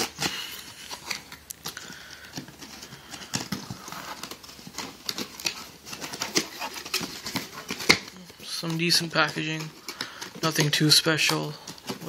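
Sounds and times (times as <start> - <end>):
cardboard box being opened: 0.0 - 12.0.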